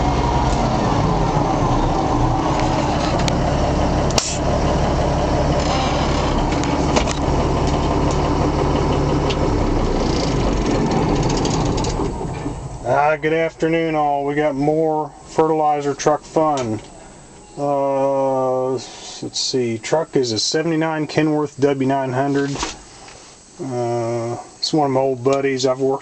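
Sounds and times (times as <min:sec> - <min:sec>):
diesel engine running: 0:00.0 - 0:22.2
sharp click: 0:04.1 - 0:04.4.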